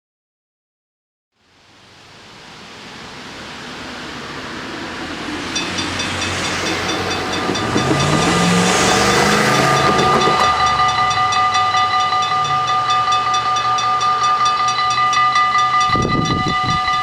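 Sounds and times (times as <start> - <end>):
train rushing on rails: 1.5 - 17.0
low rising tone: 2.3 - 16.9
rapid high ringing: 4.2 - 17.0.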